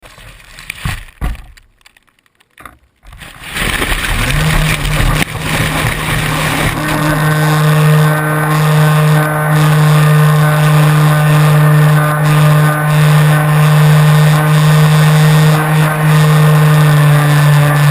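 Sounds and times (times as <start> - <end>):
electric motor and propeller drone: 5.9 - 17.9.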